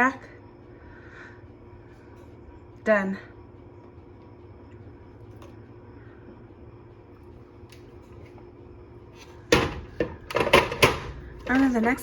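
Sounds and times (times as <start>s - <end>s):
low steady room hum: 0.0s - 12.0s
kitchen knocks and clatters: 9.2s - 12.0s.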